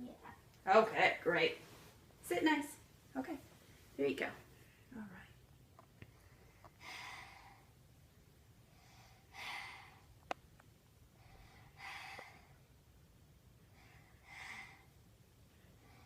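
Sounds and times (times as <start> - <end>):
child breathing deeply: 6.2 - 7.8, 8.7 - 10.2, 11.1 - 12.7, 13.6 - 15.0.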